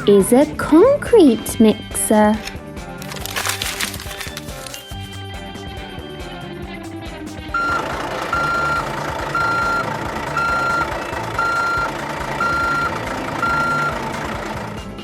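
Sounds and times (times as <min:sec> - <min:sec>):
engine rumble: 0:06.0 - 0:15.0
truck reversing alarm beeping: 0:07.6 - 0:14.8.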